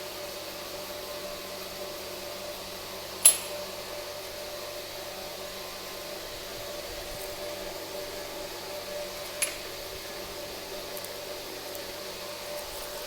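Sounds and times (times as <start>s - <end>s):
sharp click: 3.2s - 3.7s.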